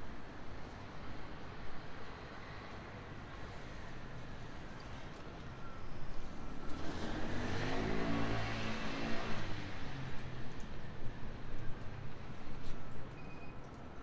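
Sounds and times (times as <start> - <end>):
vehicle passing by: 6.7 - 10.2.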